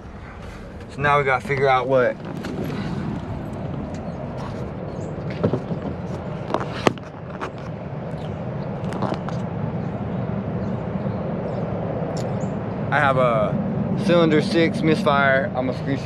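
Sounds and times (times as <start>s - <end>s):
car engine idling rough: 0.0s - 7.6s.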